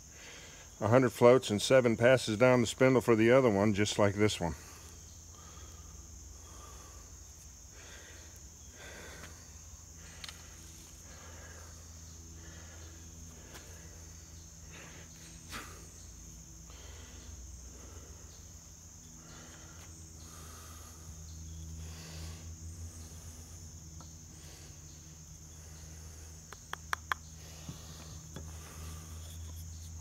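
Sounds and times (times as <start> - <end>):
crickets chirring: 0.0 - 30.0
palms rubbing hand-drill spindle: 29.1 - 30.0.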